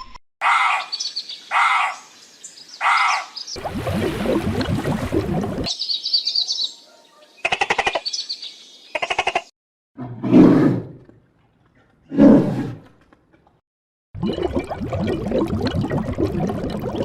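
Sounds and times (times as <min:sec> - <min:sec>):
large animal roaring: 0:10.0 - 0:11.1, 0:12.0 - 0:12.9.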